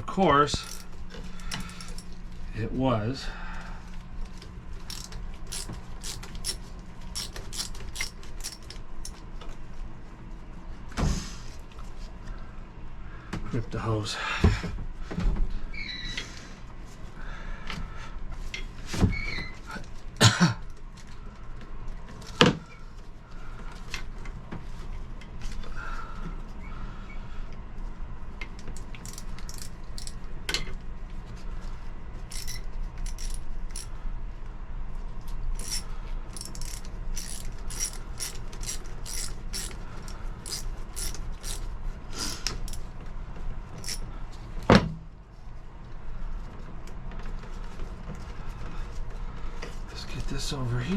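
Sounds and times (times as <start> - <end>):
steady low hum: 0.0 - 15.7, 19.6 - 50.9
metal tools knocking: 0.6 - 0.9, 29.0 - 30.2, 32.3 - 33.9.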